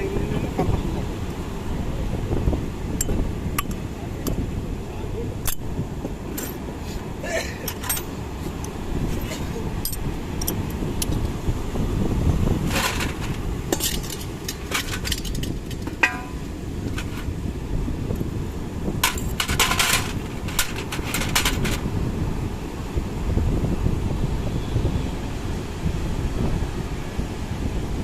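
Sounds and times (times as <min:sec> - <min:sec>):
low rumble of wind: 0:00.0 - 0:28.0
metallic clinks and knocks: 0:07.7 - 0:08.1, 0:12.7 - 0:17.3, 0:19.0 - 0:21.8.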